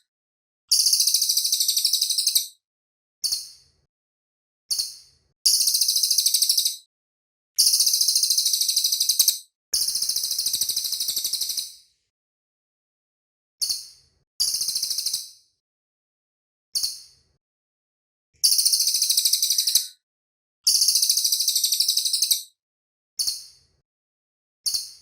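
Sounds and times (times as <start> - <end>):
small bird singing high trills: 0.7 - 2.6, 4.7 - 6.9, 7.6 - 11.8, 18.4 - 20.0, 20.7 - 22.5.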